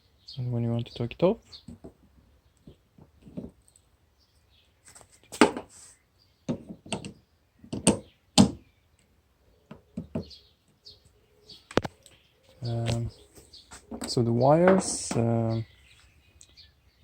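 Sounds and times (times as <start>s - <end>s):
knocks and clicks of hard parts: 6.5s - 8.6s.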